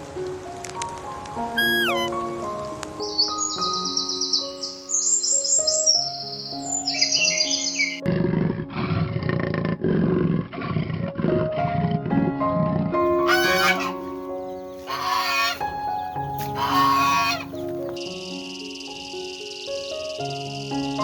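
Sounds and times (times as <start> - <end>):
background music: 0.0 - 8.9, 11.9 - 21.0
bird chirps: 1.6 - 2.2, 3.0 - 8.0, 13.1 - 19.9
shrill chicken calls: 1.6 - 2.2, 13.1 - 18.0.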